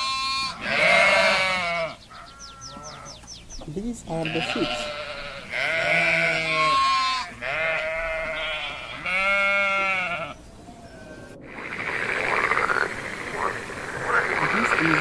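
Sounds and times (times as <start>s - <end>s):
sheep bleating: 0.0s - 3.2s, 4.0s - 11.4s.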